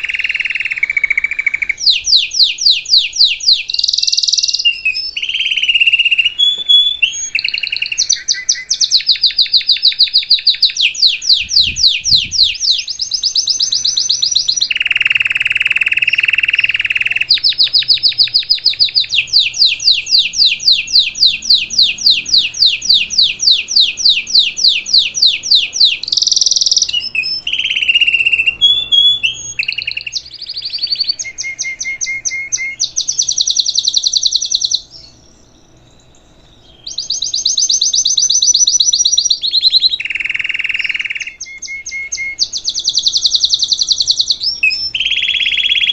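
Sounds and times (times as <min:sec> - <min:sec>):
canary singing trills: 0:00.0 - 0:45.9.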